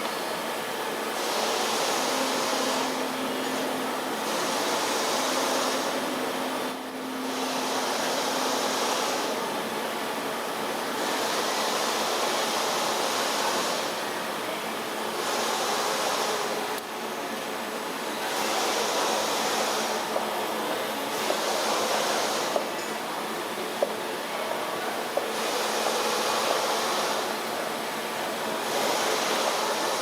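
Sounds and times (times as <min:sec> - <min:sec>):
steady hum: 0:00.0 - 0:30.0
spring forming machine hissing: 0:01.1 - 0:09.8, 0:10.9 - 0:14.1, 0:15.1 - 0:16.8, 0:18.2 - 0:20.3, 0:21.1 - 0:22.9, 0:25.2 - 0:27.5, 0:28.6 - 0:30.0.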